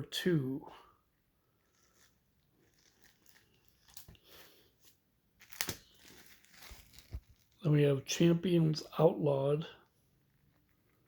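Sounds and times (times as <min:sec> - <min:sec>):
comic books rustling: 0:01.5 - 0:08.4.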